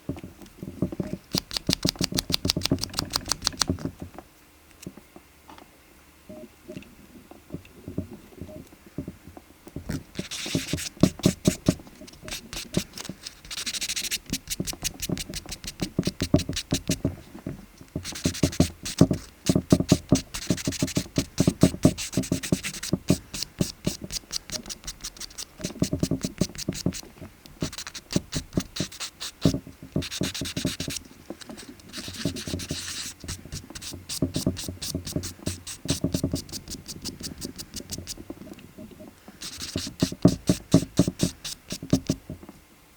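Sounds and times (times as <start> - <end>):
nail file rasping: 1.3 - 3.7, 10.2 - 17.0, 18.0 - 27.0, 27.6 - 31.0, 31.8 - 38.2, 39.4 - 42.2.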